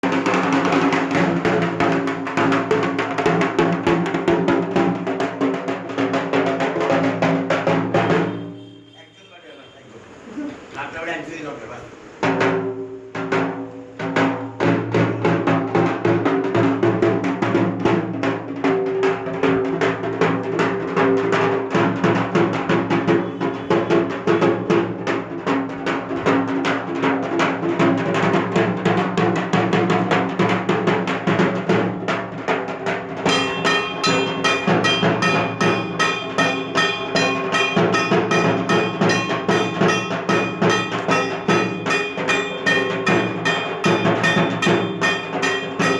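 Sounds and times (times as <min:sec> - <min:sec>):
drums rolling rhythm: 0:00.0 - 0:08.8, 0:11.0 - 0:45.9
bright metallic ringing: 0:33.2 - 0:45.9.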